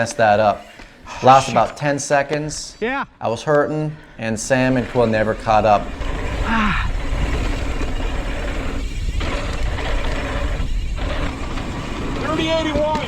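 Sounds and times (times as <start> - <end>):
bike tyres and frame rattling: 0.0 - 2.8, 4.1 - 13.0
wind rushing over microphone: 4.4 - 13.0.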